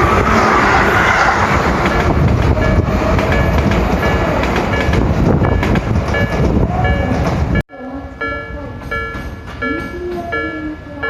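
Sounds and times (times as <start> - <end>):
electric train passing: 0.0 - 11.0
train wheels clacking over rail joints: 1.7 - 7.6
level crossing warning bell: 1.8 - 11.0.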